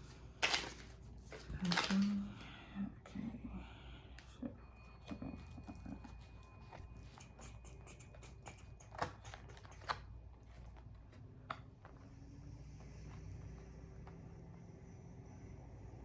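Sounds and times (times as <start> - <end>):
cards shuffling and clicking: 0.0 - 2.2, 6.1 - 12.1.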